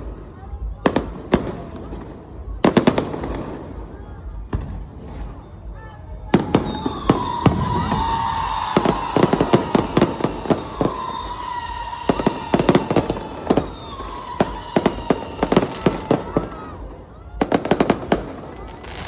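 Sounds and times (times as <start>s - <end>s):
fireworks bangs and crackling pops: 0.0s - 19.0s
steady high whistle: 6.4s - 15.8s.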